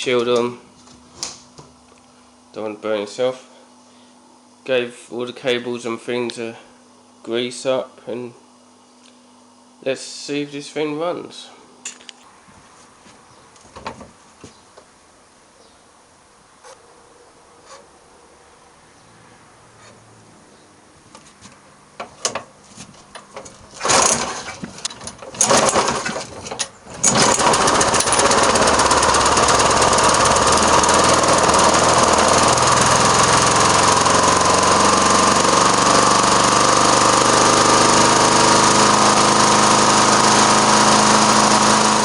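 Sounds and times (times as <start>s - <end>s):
lawn mower engine running: 23.1s - 42.0s
starter cord pulled: 23.1s - 42.0s.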